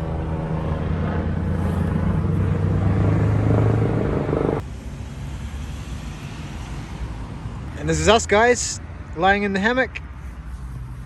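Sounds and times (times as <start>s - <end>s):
low rumble: 0.0s - 4.6s
helicopter drone: 0.0s - 7.6s.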